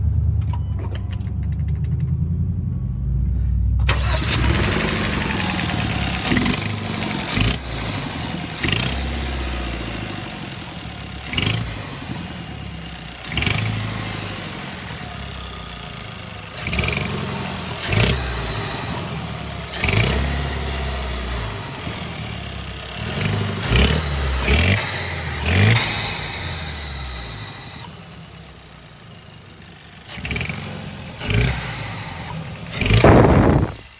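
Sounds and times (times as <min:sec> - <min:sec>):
car engine revving: 0:00.4 - 0:33.9.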